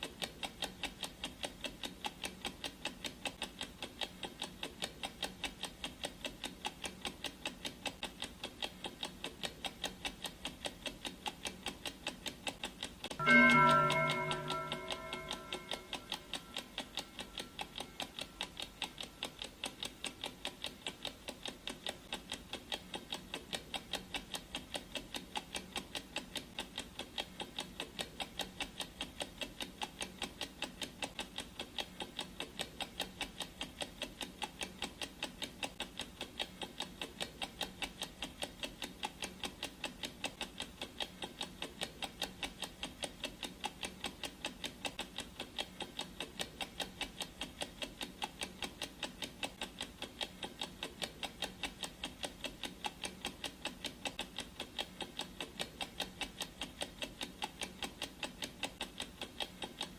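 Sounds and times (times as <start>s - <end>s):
clock ticking: 0.0s - 59.9s
gong ringing: 13.2s - 16.6s.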